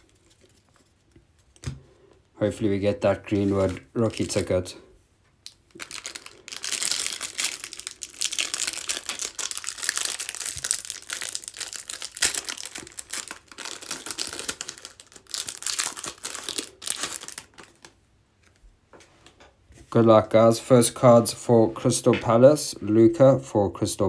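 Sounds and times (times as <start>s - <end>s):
plastic wrapper crinkling: 0.0s - 1.7s, 3.0s - 4.7s, 5.4s - 18.0s.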